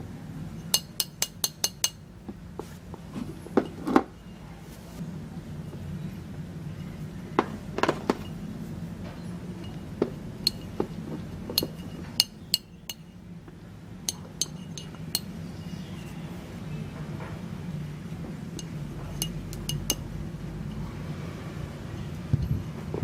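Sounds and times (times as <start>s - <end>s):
steady low hum: 0.0s - 23.0s
metal tools clinking: 11.5s - 13.1s, 14.1s - 16.1s.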